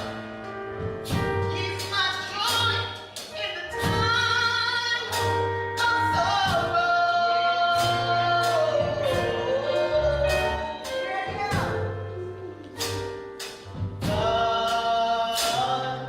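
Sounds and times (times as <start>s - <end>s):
bass and drums: 0.0s - 2.8s, 3.7s - 15.7s
gospel singing: 3.4s - 16.0s.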